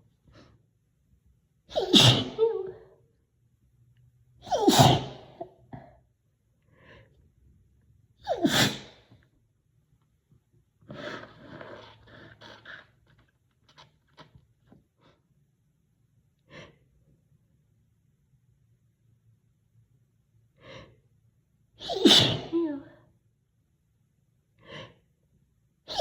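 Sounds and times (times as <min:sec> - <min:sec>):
nose blowing: 0:01.7 - 0:02.4, 0:04.5 - 0:05.3, 0:08.3 - 0:09.0
woman sneezing: 0:01.7 - 0:02.8, 0:04.4 - 0:05.5, 0:08.3 - 0:09.0, 0:21.8 - 0:23.0
sniffs: 0:08.3 - 0:09.2, 0:10.8 - 0:14.3.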